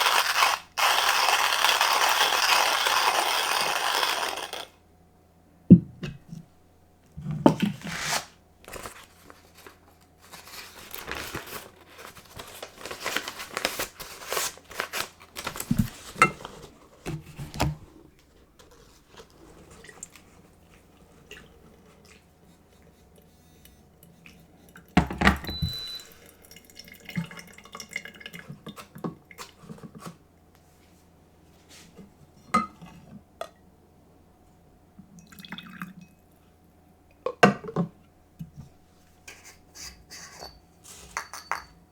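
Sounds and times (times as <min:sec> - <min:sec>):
cups and dishes clinking: 0:25.0 - 0:26.3, 0:40.2 - 0:41.9.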